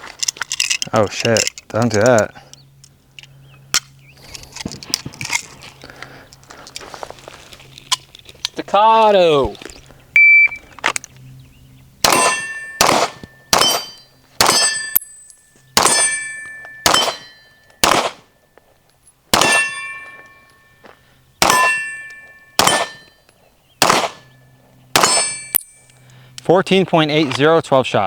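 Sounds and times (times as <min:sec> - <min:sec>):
gunshots: 0:12.0 - 0:15.0, 0:15.8 - 0:16.2, 0:16.8 - 0:18.3, 0:19.3 - 0:19.9, 0:21.4 - 0:21.9, 0:22.6 - 0:23.0, 0:23.8 - 0:25.5
steel target ringing: 0:12.0 - 0:18.2, 0:19.3 - 0:20.8, 0:21.4 - 0:23.2, 0:23.8 - 0:25.9.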